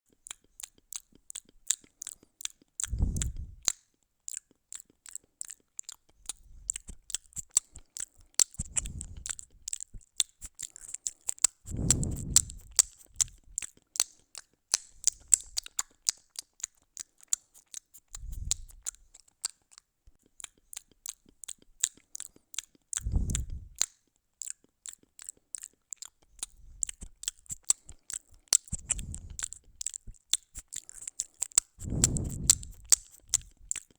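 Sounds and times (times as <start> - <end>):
cat crunching food: 0.1 - 33.9
low dull thuds: 11.7 - 12.8, 31.8 - 33.5.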